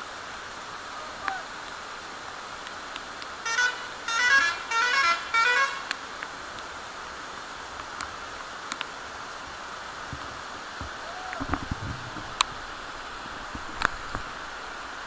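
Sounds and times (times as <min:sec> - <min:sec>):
multi-tone vehicle horn blasts: 0:03.4 - 0:06.0.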